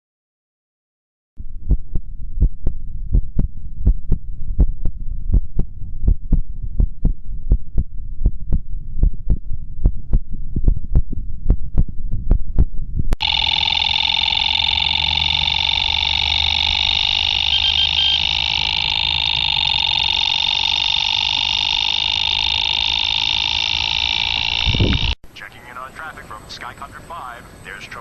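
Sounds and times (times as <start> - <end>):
low hum: 1.4 - 25.2
heartbeat thumps: 1.7 - 13.2
steady radio-like tone: 13.2 - 28.0.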